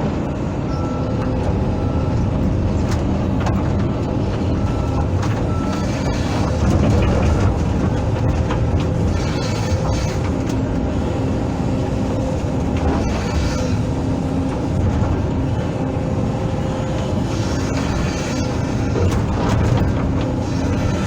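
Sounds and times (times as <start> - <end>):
excavator diesel engine running: 0.0 - 21.0
hydraulic whine: 0.0 - 21.0.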